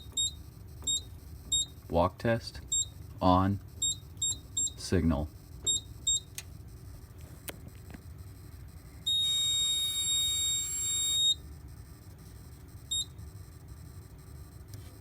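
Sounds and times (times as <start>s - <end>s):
high-pitched buzzer beep: 3.8s - 4.8s, 5.4s - 6.3s, 8.2s - 14.6s.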